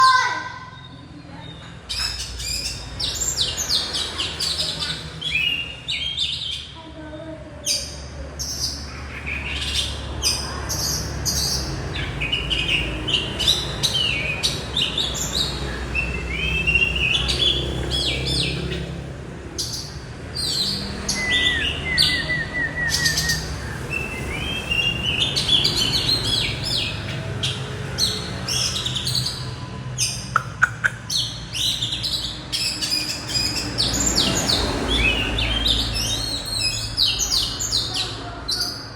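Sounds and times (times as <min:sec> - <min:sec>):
small birds chirping: 0:00.0 - 0:38.9
bird trill: 0:19.6 - 0:38.9.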